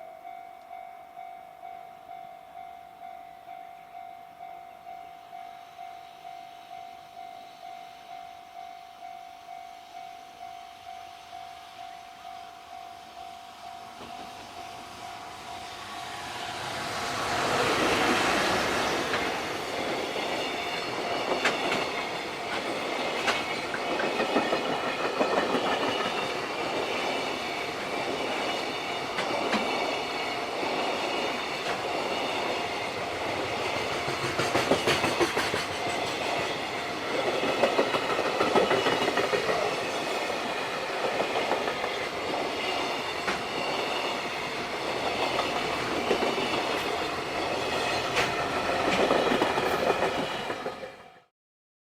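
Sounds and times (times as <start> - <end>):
train wheels clattering over rail joints: 16.6 - 51.0.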